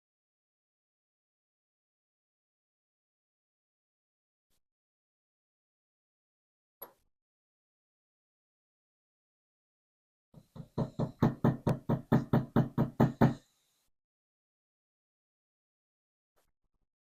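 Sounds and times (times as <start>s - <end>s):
knocks: 10.6s - 13.4s.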